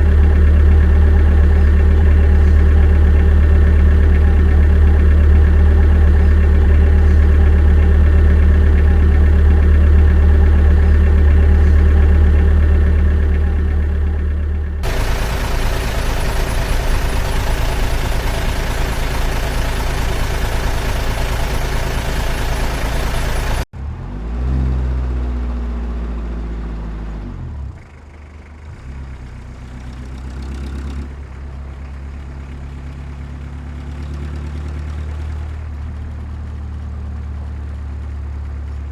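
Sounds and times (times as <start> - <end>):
model machine engine humming: 0.0 - 23.7.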